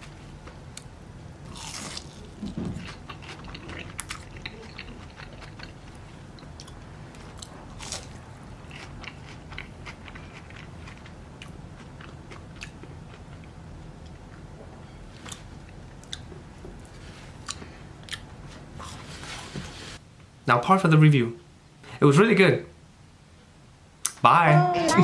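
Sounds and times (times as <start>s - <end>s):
person chewing crispy food: 0.7s - 14.3s.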